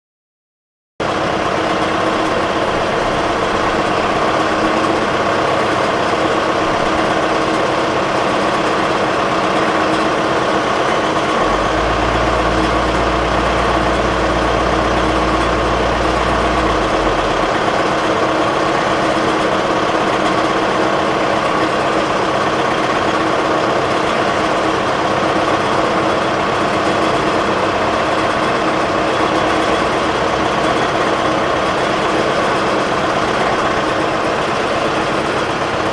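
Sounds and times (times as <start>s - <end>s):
diesel truck engine idling: 1.0s - 21.4s, 22.2s - 35.9s
deep low hum: 11.3s - 18.4s.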